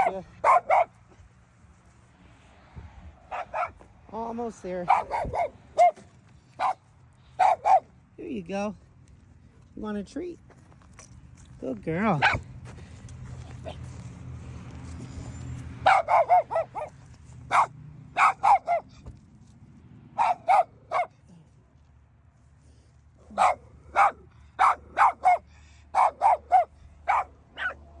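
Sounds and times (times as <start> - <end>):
dog barking: 0.0 - 1.0, 3.3 - 3.8, 4.9 - 6.8, 7.4 - 7.9, 12.2 - 12.4, 15.8 - 18.9, 20.2 - 21.2, 23.2 - 27.9.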